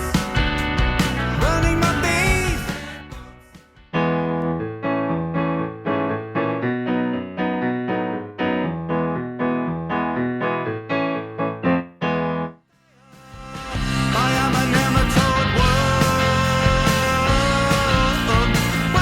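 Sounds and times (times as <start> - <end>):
piano chords: 0.0 - 12.7.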